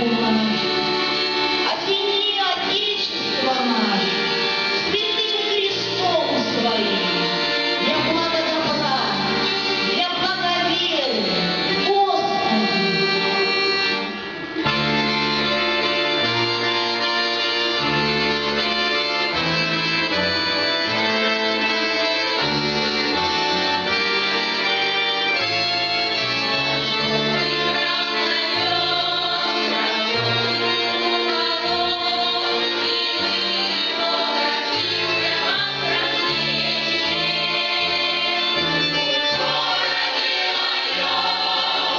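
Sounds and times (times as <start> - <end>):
instrumental accompaniment: 0.0 - 41.9
folk choir singing: 26.2 - 41.9.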